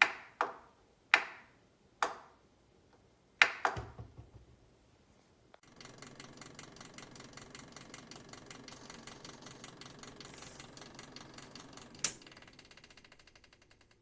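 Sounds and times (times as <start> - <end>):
small electric fan motor ticking: 5.6 - 14.0.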